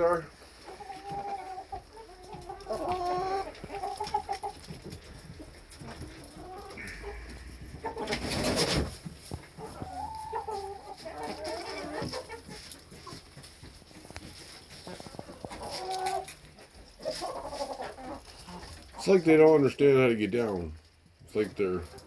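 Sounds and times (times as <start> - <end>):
chickens clucking: 0.0 - 22.0
loud rustling scuffle: 2.3 - 10.0.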